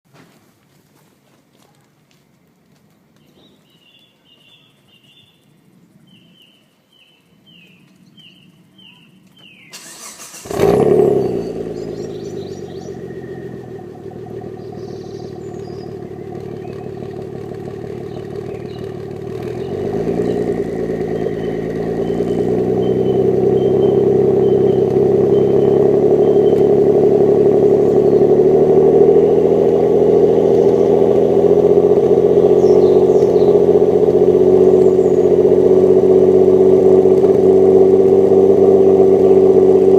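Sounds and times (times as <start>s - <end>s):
birds chirping: 3.0s - 39.9s
engine starting and running: 9.4s - 39.9s.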